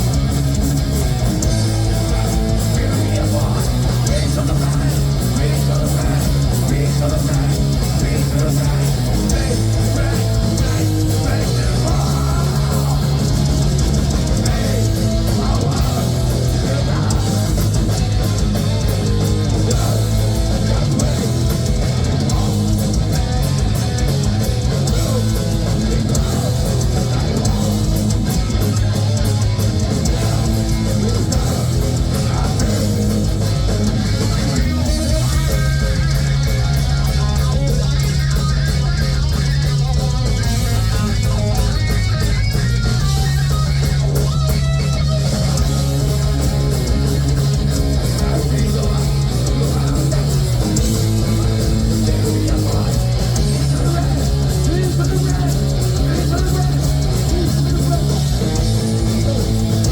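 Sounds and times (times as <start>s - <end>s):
heavy metal band playing live: 0.0s - 59.9s.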